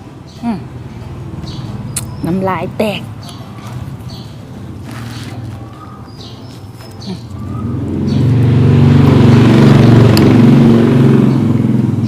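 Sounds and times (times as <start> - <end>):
vehicle engine running loud: 6.8 - 12.0.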